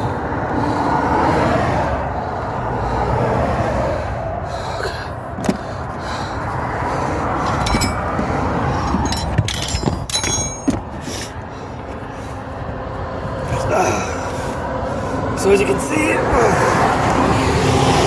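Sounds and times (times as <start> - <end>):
low vehicle rumble: 0.0 - 18.0
metallic clinks: 7.5 - 11.3.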